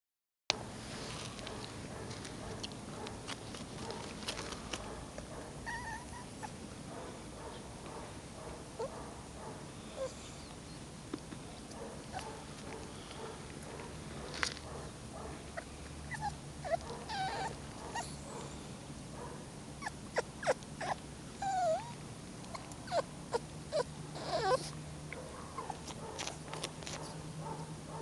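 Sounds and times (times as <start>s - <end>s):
steady low hum: 0.5s - 28.0s
puppies whimpering and squeaking: 5.6s - 6.6s, 15.6s - 18.3s, 19.8s - 24.8s.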